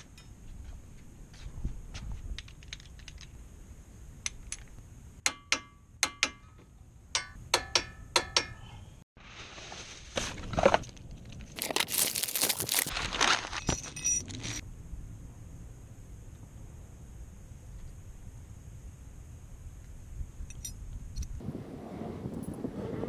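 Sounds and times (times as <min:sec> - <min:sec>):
scraping and rustling: 0:09.4 - 0:14.6.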